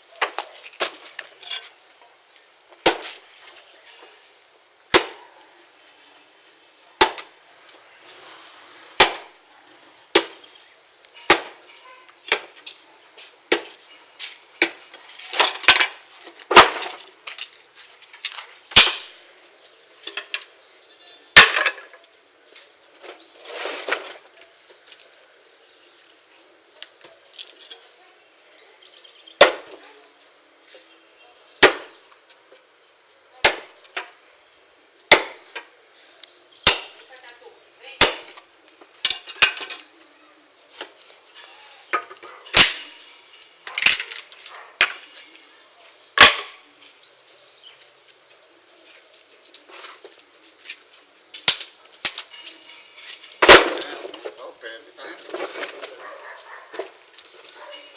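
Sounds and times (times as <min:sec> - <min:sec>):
hand tool striking wood: 0:09.0 - 0:09.3, 0:29.4 - 0:29.8, 0:35.1 - 0:35.4, 0:36.7 - 0:37.0, 0:41.9 - 0:42.9, 0:46.2 - 0:46.6.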